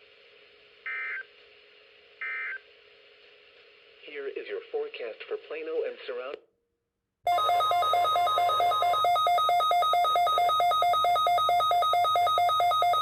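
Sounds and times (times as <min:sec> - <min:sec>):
steady warning alarm tone: 0:07.3 - 0:13.0
two-pitch alarm beeping: 0:07.3 - 0:13.0.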